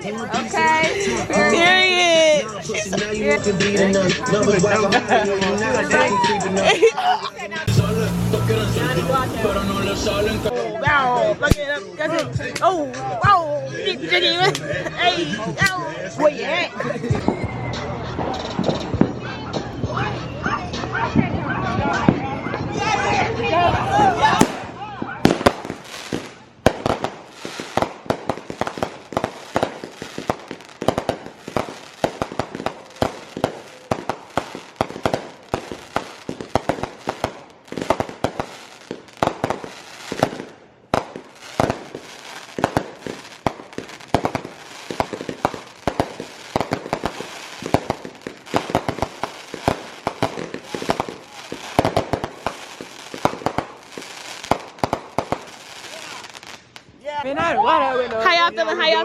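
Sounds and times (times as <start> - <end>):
fireworks bangs and crackling pops: 24.3 - 56.9.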